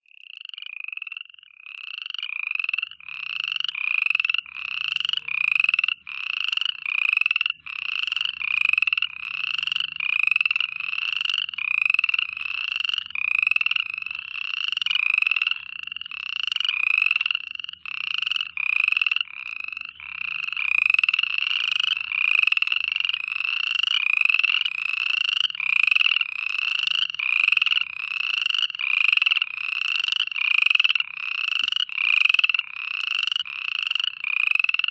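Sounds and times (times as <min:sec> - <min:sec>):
frogs croaking: 0:00.0 - 0:34.9.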